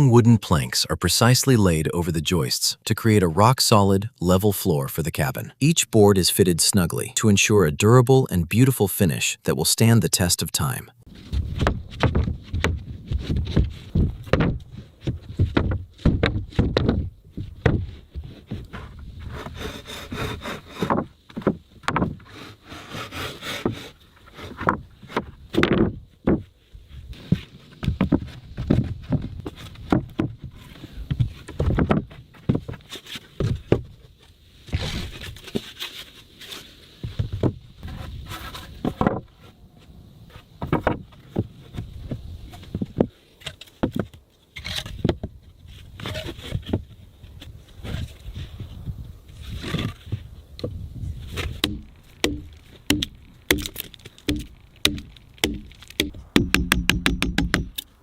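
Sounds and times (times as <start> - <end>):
scraping or sawing wood: 17.7 - 25.2
wood knocking on wood: 51.6 - 57.8.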